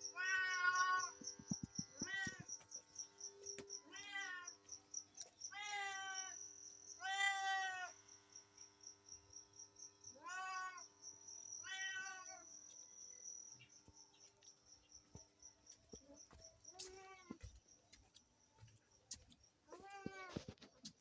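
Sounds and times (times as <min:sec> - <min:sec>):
cat meowing: 0:10.2 - 0:10.8.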